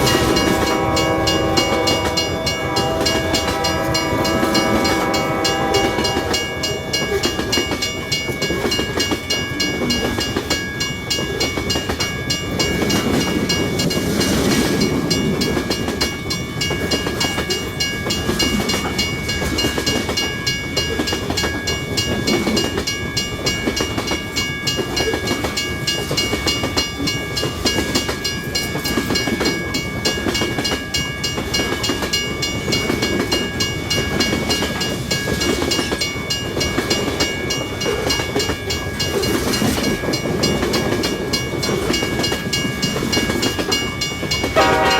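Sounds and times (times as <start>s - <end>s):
train horn: 0.0s - 7.4s, 44.6s - 44.9s
freight train rolling past: 0.0s - 44.9s.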